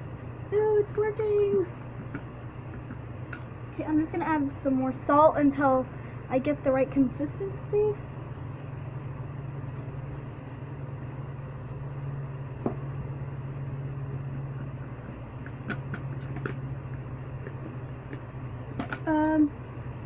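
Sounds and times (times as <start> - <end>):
steady low hum: 0.0 - 20.0
light clicks and taps stirring: 14.6 - 19.0.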